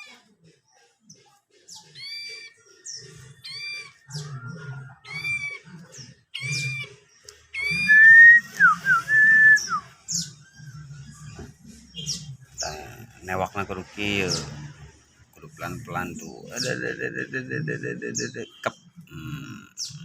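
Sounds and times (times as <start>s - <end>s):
bird chirping: 0.0s - 20.0s
bird whistling: 6.3s - 11.2s.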